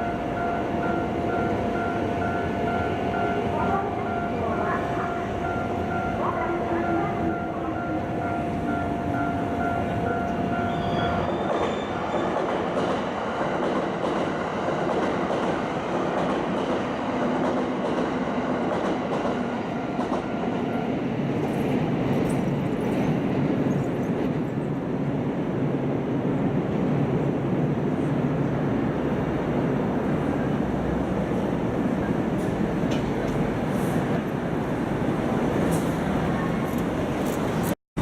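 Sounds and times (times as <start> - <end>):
steady high tone: 0.0 - 12.4
train wheels clattering on rails: 8.7 - 24.4, 32.1 - 34.2.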